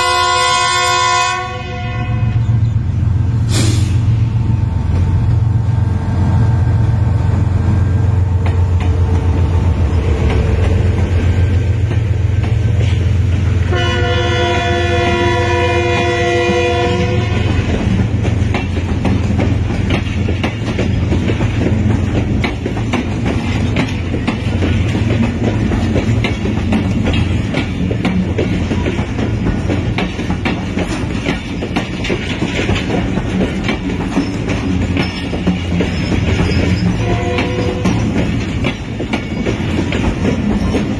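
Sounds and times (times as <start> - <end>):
locomotive air horn blast: 0.0 - 2.4, 13.6 - 17.6, 37.0 - 37.9
train rumble: 0.0 - 40.9
wheels clicking over rail joints: 17.0 - 40.9.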